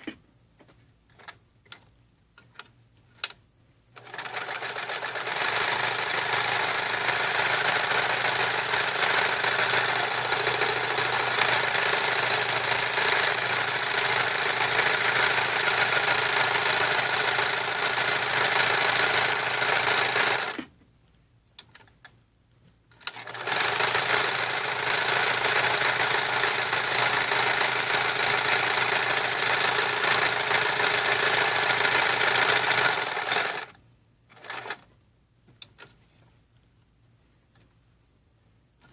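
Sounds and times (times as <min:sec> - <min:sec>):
sewing machine running: 0:04.0 - 0:20.6, 0:23.1 - 0:34.8.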